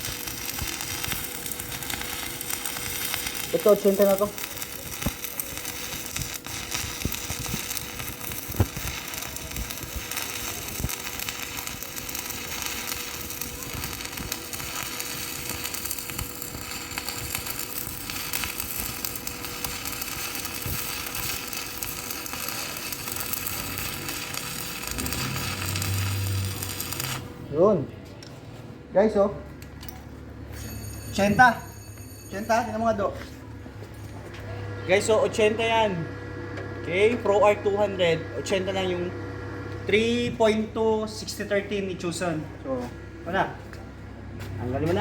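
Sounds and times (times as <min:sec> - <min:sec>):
welding arc crackling and popping: 0:00.0 - 0:27.4.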